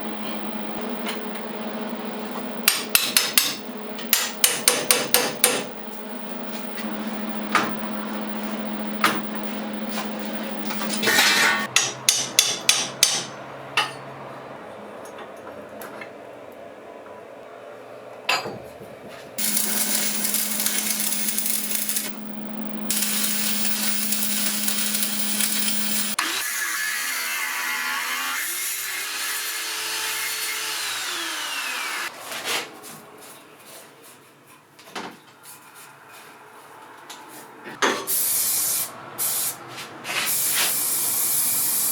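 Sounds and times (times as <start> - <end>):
electric motor humming: 19.4 - 26.4.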